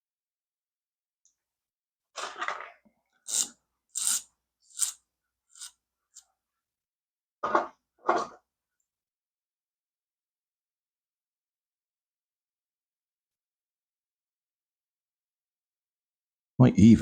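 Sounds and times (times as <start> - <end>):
metal shim scratching in padlock: 3.2 - 6.3.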